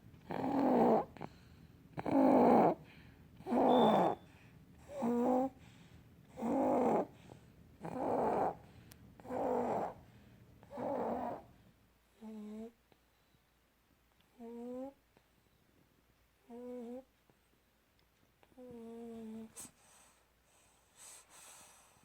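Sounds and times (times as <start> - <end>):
baby snoring: 0.2 - 1.3, 2.0 - 2.8, 3.4 - 4.2, 4.8 - 5.6, 6.3 - 7.2, 7.8 - 8.6, 9.2 - 10.0, 10.7 - 11.5, 14.4 - 15.0.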